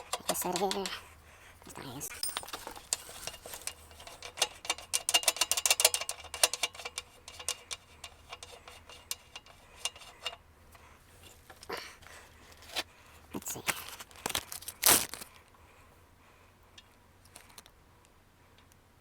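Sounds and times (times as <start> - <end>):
light metallic clicks and rubbing: 0.0 - 12.9.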